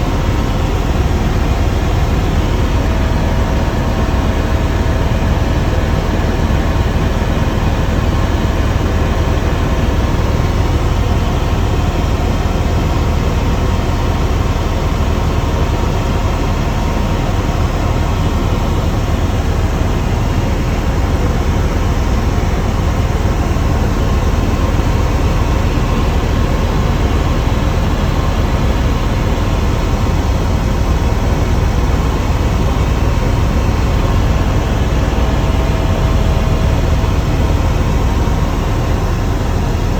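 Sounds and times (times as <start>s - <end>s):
faint steady whine: 0.0s - 39.9s
helicopter engine and rotor drone: 0.0s - 39.9s.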